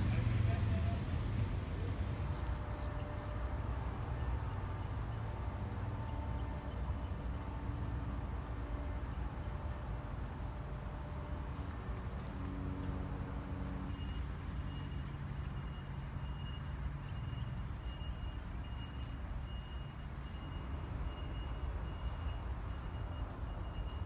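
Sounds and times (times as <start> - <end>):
reversing alarm beeping: 12.8 - 24.0.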